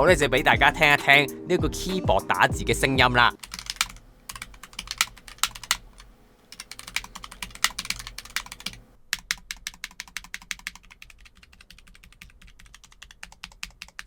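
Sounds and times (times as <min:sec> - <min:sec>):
mechanical keyboard typing: 0:03.4 - 0:14.0.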